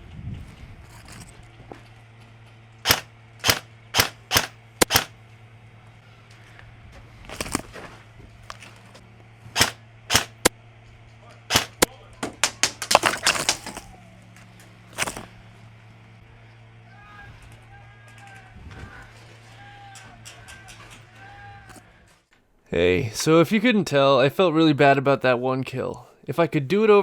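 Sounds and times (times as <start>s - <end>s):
airsoft gun shots: 2.8s - 5.2s, 9.6s - 10.5s, 11.5s - 13.8s.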